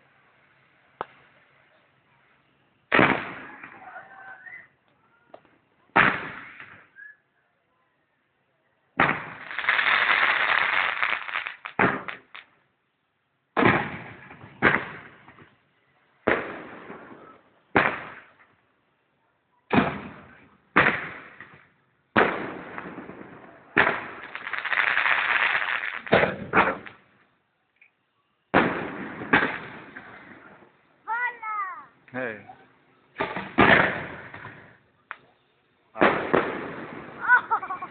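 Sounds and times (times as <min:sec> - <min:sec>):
dense continuous firework noise: 0:00.0 - 0:07.4, 0:08.0 - 0:37.9
fireworks bangs: 0:02.5 - 0:04.6, 0:05.4 - 0:07.0, 0:09.0 - 0:12.5, 0:13.6 - 0:15.6, 0:16.2 - 0:18.6, 0:19.7 - 0:27.3, 0:28.4 - 0:31.4, 0:33.1 - 0:37.9.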